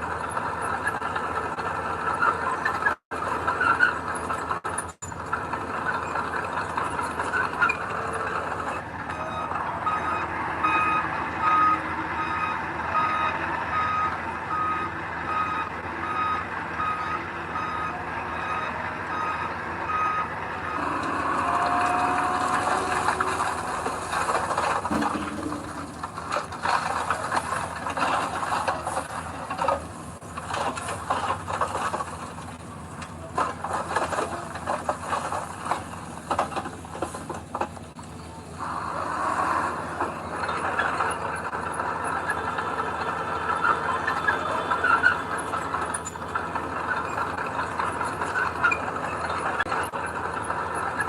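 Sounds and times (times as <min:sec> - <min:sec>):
diesel engine running: 0:00.0 - 0:51.0
reversing alarm beeping: 0:07.8 - 0:26.2
clanks and rattles: 0:20.8 - 0:38.3.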